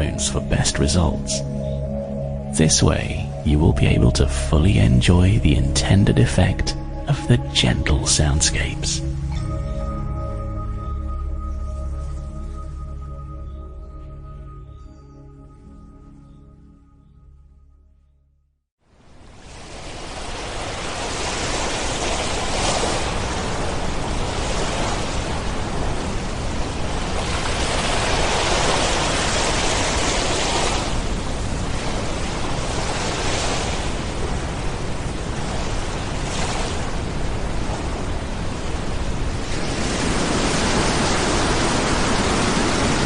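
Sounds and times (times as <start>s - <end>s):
waves breaking on beach: 19.0s - 43.0s.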